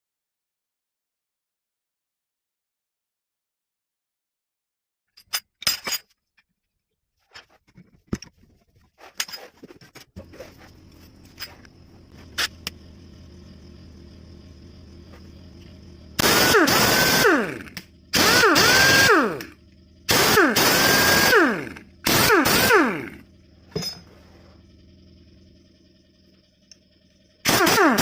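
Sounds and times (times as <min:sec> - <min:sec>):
air impact wrench whining: 0:15.1 - 0:24.8, 0:27.4 - 0:28.0.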